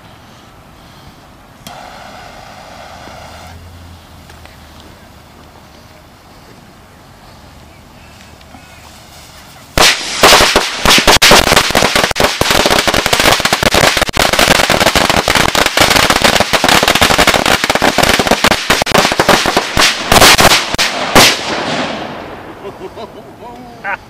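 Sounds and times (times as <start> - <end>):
firecrackers banging: 1.6 - 3.6, 8.8 - 23.4.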